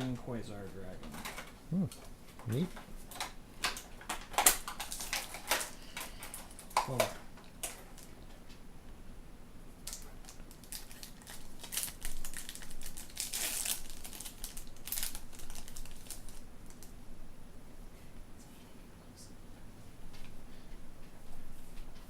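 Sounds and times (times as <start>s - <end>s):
plastic wrapper crinkling: 2.5s - 8.1s, 9.8s - 17.0s.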